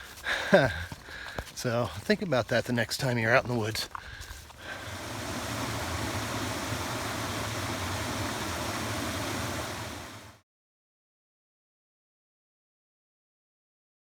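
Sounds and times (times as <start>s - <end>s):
stream water rushing: 4.0s - 10.4s.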